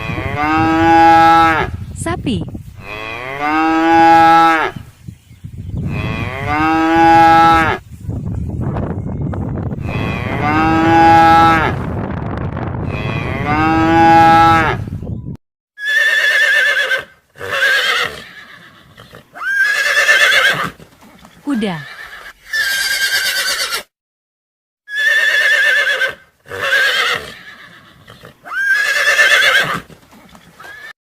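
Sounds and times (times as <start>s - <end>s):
cow mooing: 0.0s - 1.7s, 2.8s - 4.8s, 5.8s - 7.8s, 9.8s - 11.8s, 12.8s - 14.8s
horse whinnying: 15.8s - 23.9s, 24.9s - 31.0s.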